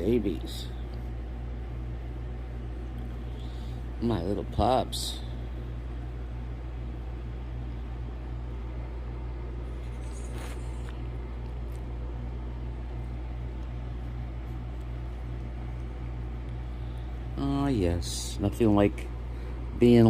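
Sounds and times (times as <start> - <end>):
low mechanical hum: 0.0 - 20.0
faint rustle: 9.7 - 11.0.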